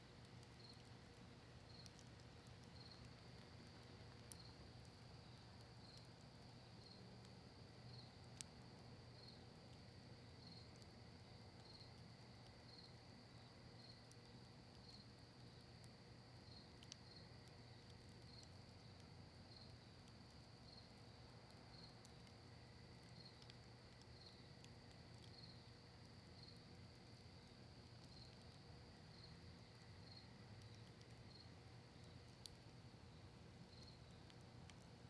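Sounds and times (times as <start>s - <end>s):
campfire crackling: 0.0s - 35.0s
cricket trilling: 1.7s - 3.5s.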